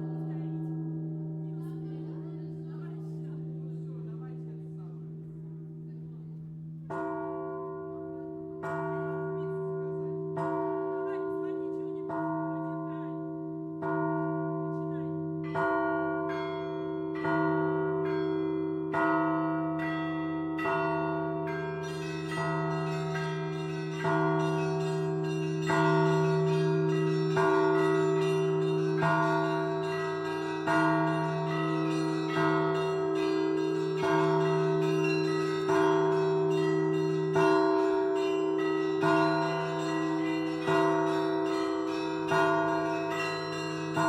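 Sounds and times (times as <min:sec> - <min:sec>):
low hum of large bells: 0:00.0 - 0:44.0
church bell strokes: 0:06.4 - 0:44.0
small high bells chiming: 0:13.9 - 0:44.0.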